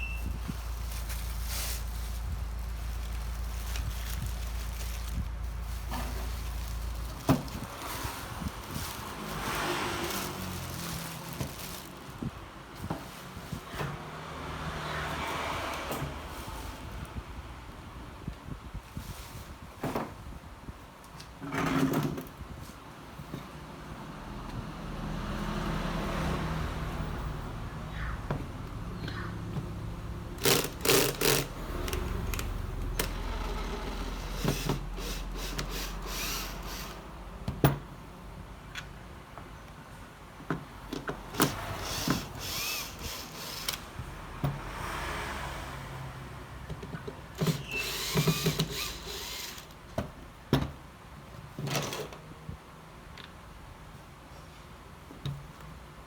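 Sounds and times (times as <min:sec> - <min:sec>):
small power tool humming: 0:41.8 - 0:43.8, 0:47.5 - 0:49.7.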